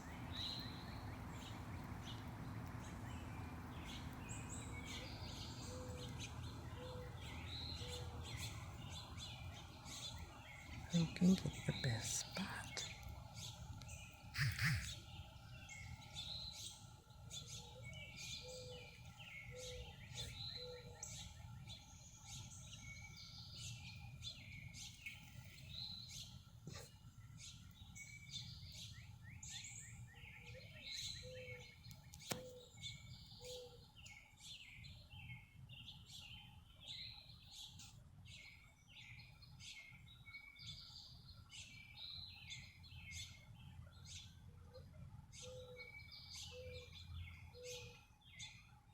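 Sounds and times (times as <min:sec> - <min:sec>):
songbirds chirping: 0:00.0 - 0:48.9
low bird call: 0:14.2 - 0:15.3.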